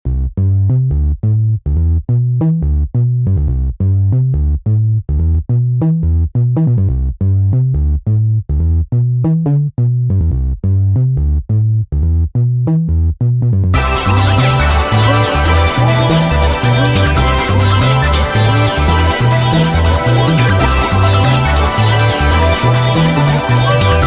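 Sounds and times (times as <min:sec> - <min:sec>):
pulsing bass line: 0:00.0 - 0:24.0
electronic synthesizer music: 0:13.8 - 0:24.0.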